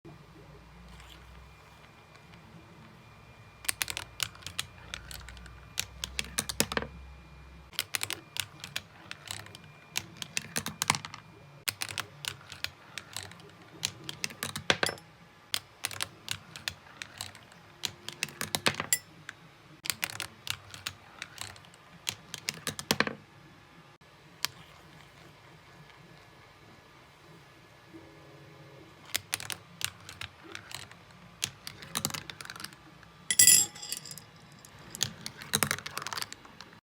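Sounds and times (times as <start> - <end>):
glass marbles clicking on plastic track: 14.2 - 15.0, 30.1 - 36.4.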